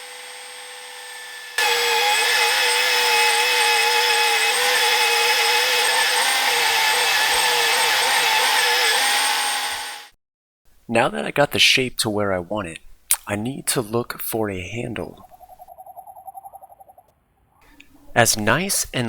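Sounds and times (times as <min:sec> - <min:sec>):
belt sander grinding metal: 0:00.0 - 0:10.1.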